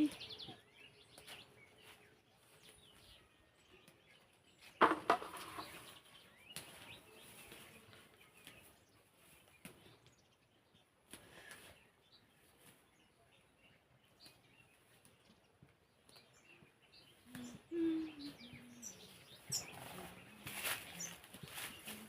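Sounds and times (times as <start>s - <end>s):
faint birds chirping: 0.0s - 22.0s.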